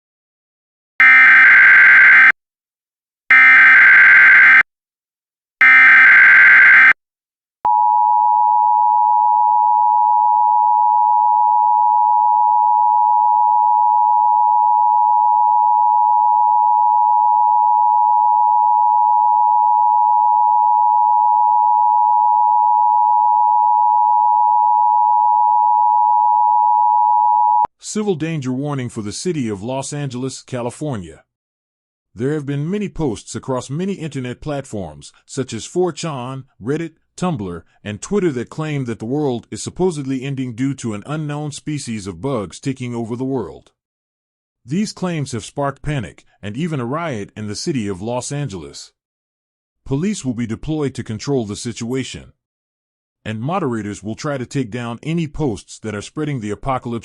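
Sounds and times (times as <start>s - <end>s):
rasping data chirps: 3.3s - 4.6s
two-tone attention signal: 3.3s - 4.6s, 5.6s - 6.9s.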